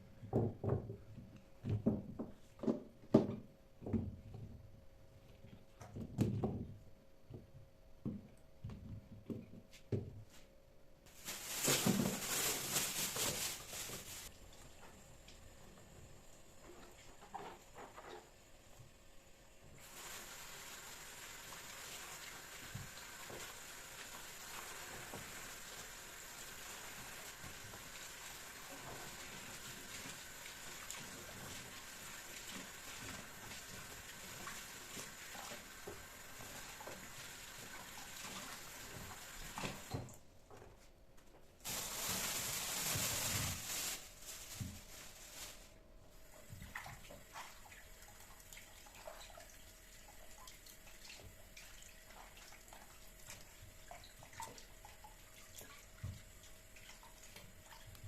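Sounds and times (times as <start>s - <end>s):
tap water running into sink: 19.8s - 40.1s.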